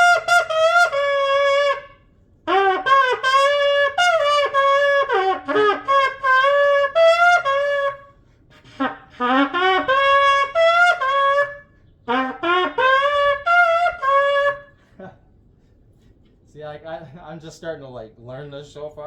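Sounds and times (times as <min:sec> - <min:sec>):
horn blown with sliding pitch: 0:00.0 - 0:14.8.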